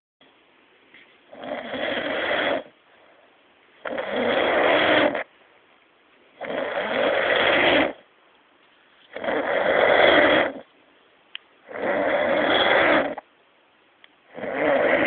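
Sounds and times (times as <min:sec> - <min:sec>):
man snoring: 0:01.3 - 0:02.7, 0:03.8 - 0:05.3, 0:06.4 - 0:08.0, 0:09.1 - 0:10.6, 0:11.7 - 0:13.2, 0:14.3 - 0:15.0.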